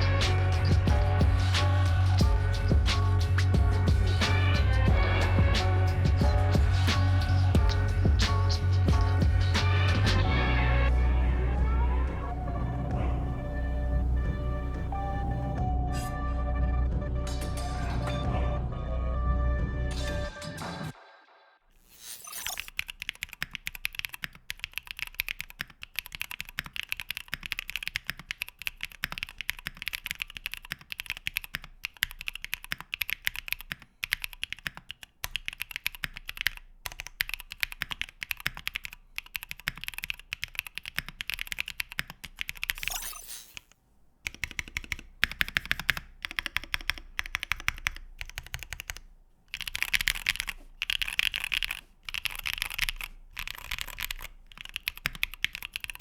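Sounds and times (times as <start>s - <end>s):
mechanical keyboard typing: 22.3s - 56.0s.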